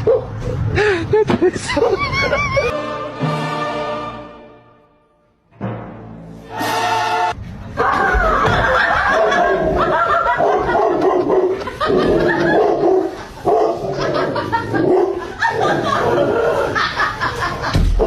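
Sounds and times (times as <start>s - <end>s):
dog barking: 0.0s - 0.4s, 9.1s - 9.6s, 10.2s - 11.6s, 12.4s - 14.0s, 14.8s - 15.2s
person laughing: 0.8s - 2.8s, 11.6s - 17.8s.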